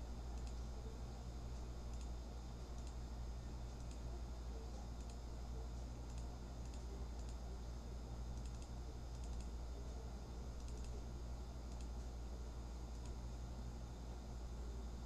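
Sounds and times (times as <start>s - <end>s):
steady low hum: 0.0s - 15.0s
keyboard and mouse clicks: 8.4s - 9.5s, 10.6s - 11.0s.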